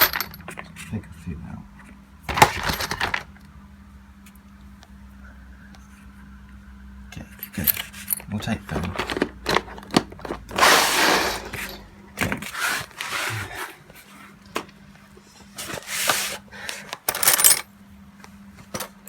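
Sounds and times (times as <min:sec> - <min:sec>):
metal rivets clinking and rattling: 0:00.0 - 0:00.5, 0:02.3 - 0:03.3, 0:17.0 - 0:17.7.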